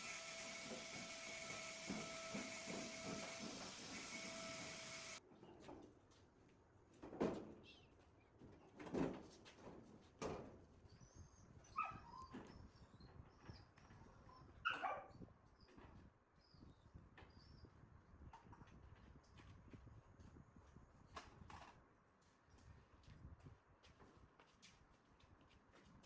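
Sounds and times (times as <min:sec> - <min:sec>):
dog barking: 0:14.7 - 0:15.1.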